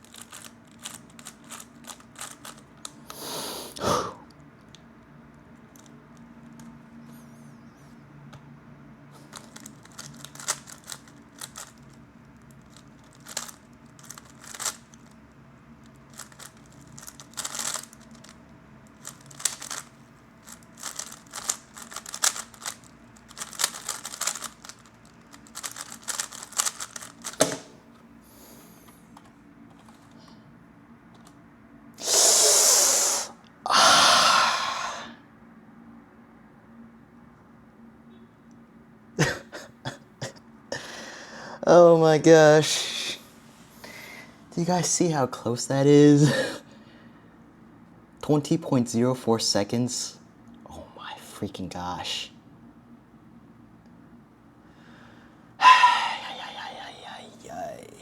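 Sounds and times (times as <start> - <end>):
puzzle cube plastic clicks: 0.0 - 3.2, 9.2 - 15.2, 15.8 - 27.7.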